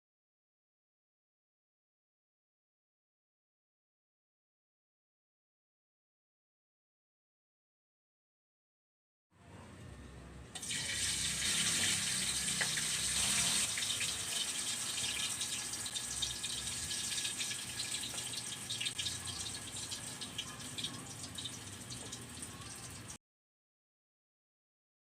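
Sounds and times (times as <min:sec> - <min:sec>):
food sizzling in hot oil: 0:10.6 - 0:23.2.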